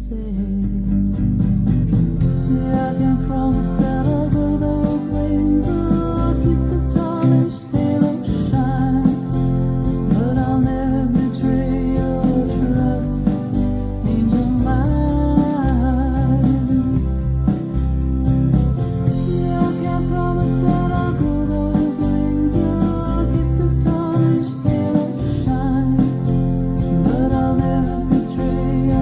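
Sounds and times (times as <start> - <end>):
guitar: 0.0 - 29.0
steady bass: 0.0 - 29.0
person singing: 2.3 - 17.2, 19.1 - 29.0.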